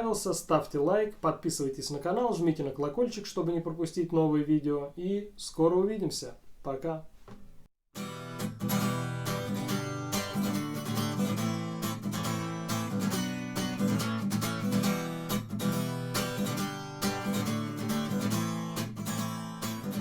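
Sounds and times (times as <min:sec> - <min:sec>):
acoustic guitar strumming: 0:08.0 - 0:20.0.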